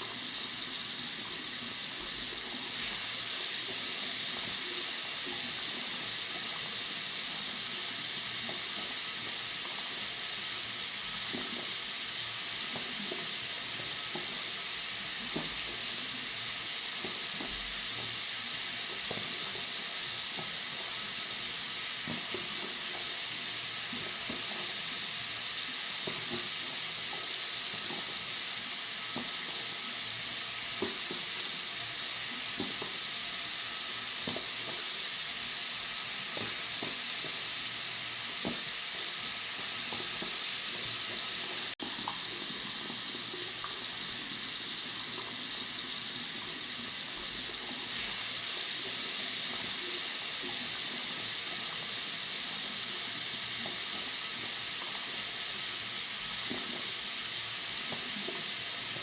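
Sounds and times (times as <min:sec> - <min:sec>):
water running from a tap: 0:00.0 - 0:59.0.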